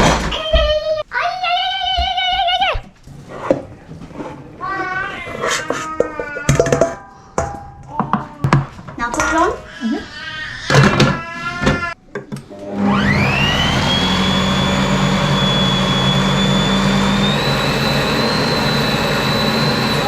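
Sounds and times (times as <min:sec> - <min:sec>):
blender motor whine: 0:12.6 - 0:20.0.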